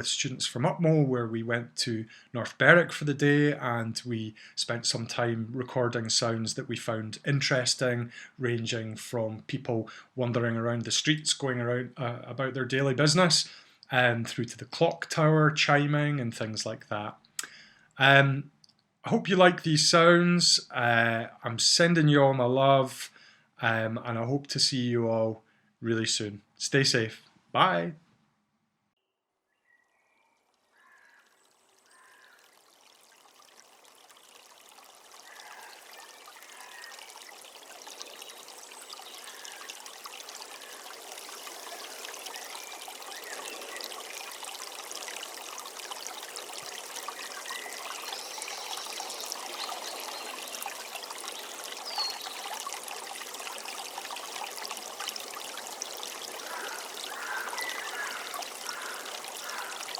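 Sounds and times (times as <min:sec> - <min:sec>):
stream water flowing: 0:00.0 - 0:01.0, 0:30.4 - 0:59.9
faint bird calls: 0:29.6 - 0:32.5, 0:35.2 - 0:37.2, 0:56.2 - 0:59.9.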